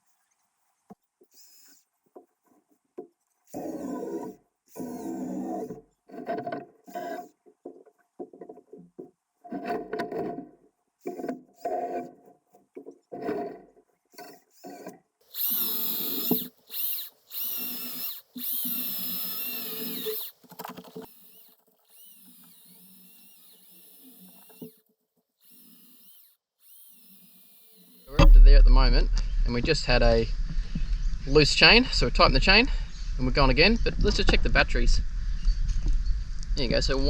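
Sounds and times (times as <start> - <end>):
electric chainsaw cutting wood: 15.3 - 24.8, 25.4 - 28.3.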